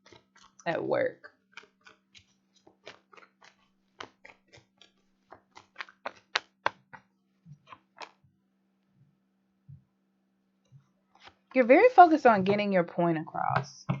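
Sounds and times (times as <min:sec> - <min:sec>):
cards clicking and snapping: 0:00.0 - 0:00.6, 0:01.5 - 0:08.2.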